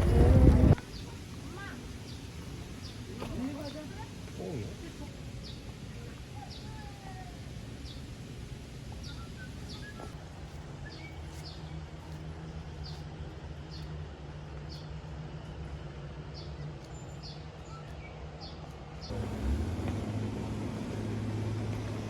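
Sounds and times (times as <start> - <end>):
birds chirping: 0.0 - 10.2, 16.4 - 22.0
faint whistles: 9.0 - 11.7
low steady hum: 18.8 - 22.0.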